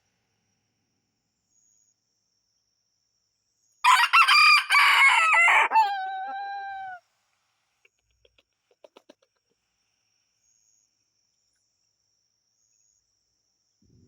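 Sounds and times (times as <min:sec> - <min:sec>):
rooster crowing: 0:03.8 - 0:07.0.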